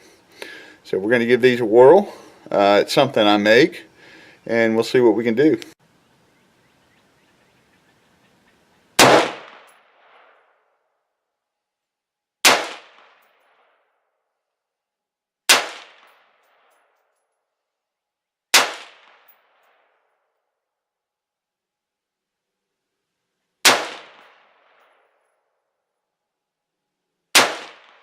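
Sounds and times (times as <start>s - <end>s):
rifle shots: 9.0s - 10.4s, 12.4s - 13.7s, 15.5s - 16.7s, 18.5s - 19.7s, 23.6s - 25.0s, 27.3s - 28.0s.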